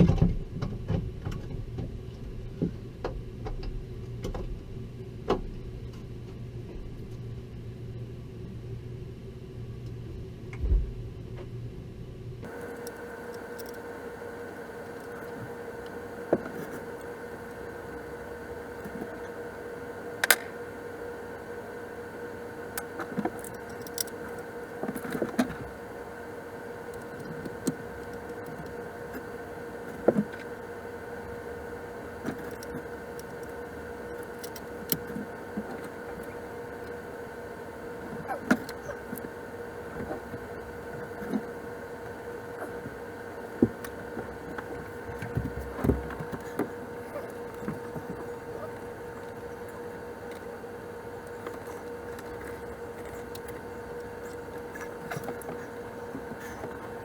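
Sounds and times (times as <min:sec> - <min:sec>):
steady hum: 0:00.0 - 0:57.0.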